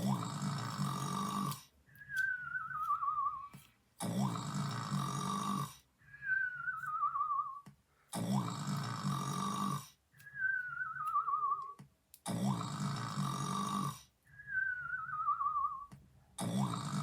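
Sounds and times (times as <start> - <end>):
cartoon snoring: 0.0 - 1.7, 4.0 - 5.9, 8.1 - 10.0, 12.2 - 14.1, 16.4 - 17.0.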